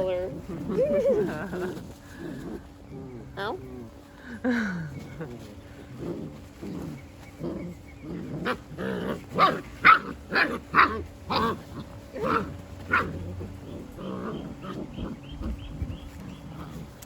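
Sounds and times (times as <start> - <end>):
puppies barking: 6.4 - 16.9.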